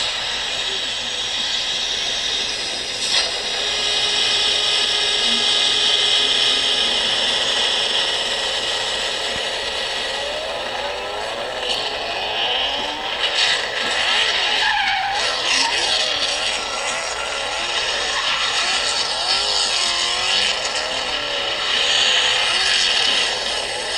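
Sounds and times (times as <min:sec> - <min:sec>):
car engine revving hard: 0:00.0 - 0:23.9
tyres squealing: 0:12.9 - 0:20.3.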